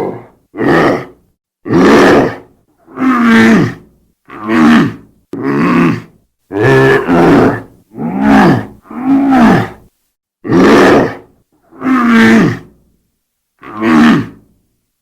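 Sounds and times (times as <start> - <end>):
monster roars: 0.0 - 11.2, 13.6 - 14.4.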